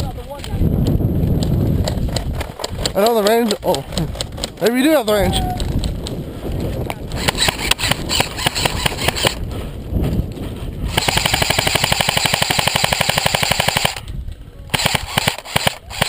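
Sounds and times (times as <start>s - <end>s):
airsoft gun firing: 10.9s - 14.0s, 14.7s - 16.0s.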